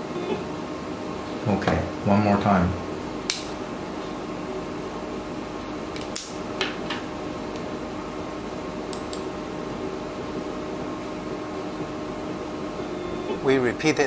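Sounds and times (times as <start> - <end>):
steady hum: 0.0 - 14.0
faint level tones: 12.8 - 14.0.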